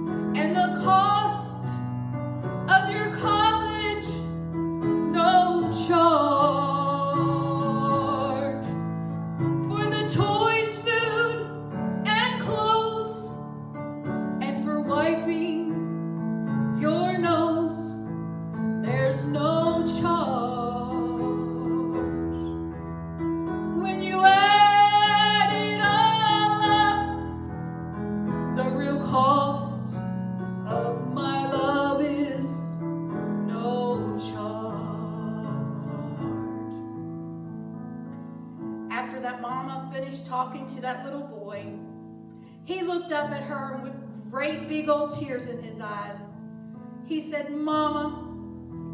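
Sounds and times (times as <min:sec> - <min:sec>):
piano accompaniment: 0:00.0 - 0:48.9
woman singing slow song: 0:05.1 - 0:08.7, 0:09.6 - 0:13.3, 0:18.8 - 0:22.6, 0:23.7 - 0:27.4, 0:28.6 - 0:32.8, 0:33.5 - 0:36.8.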